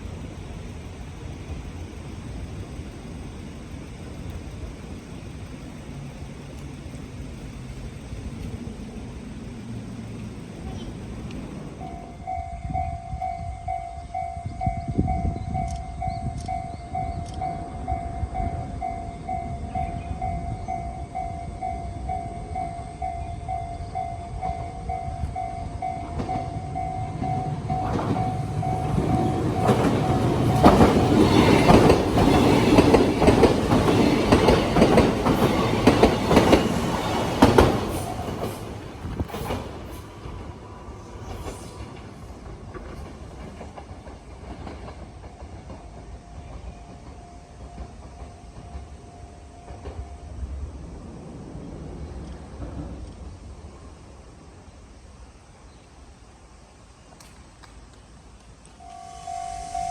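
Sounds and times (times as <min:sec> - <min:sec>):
level-crossing bell ringing: 0:11.8 - 0:32.6, 0:58.8 - 0:59.9
train wheels clattering: 0:25.2 - 0:50.2.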